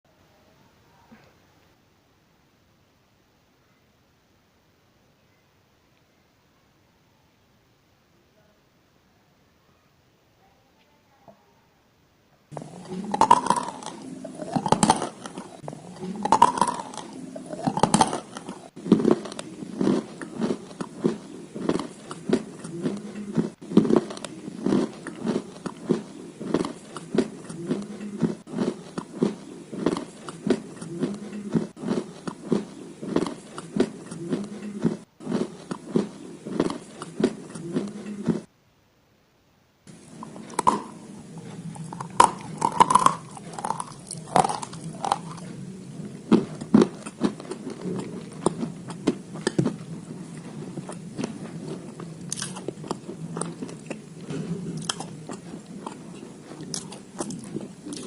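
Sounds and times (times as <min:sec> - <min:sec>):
crunchy bites: 0:12.5 - 0:38.5, 0:39.9 - 0:58.0
person chewing: 0:12.5 - 0:38.5, 0:39.9 - 0:58.0.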